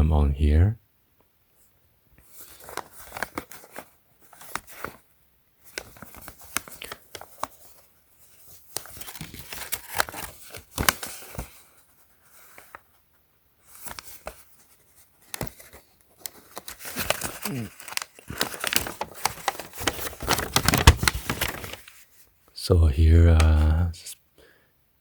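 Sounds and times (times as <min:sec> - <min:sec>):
packaging crinkling and rustling: 0:02.2 - 0:13.0, 0:13.6 - 0:22.3.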